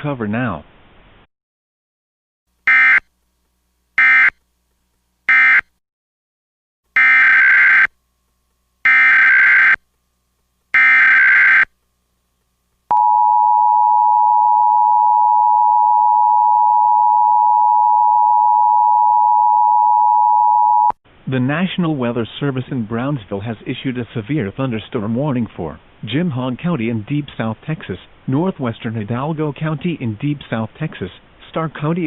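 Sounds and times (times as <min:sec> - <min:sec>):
harsh electronic data bursts: 0:08.8 - 0:09.8, 0:10.8 - 0:11.7.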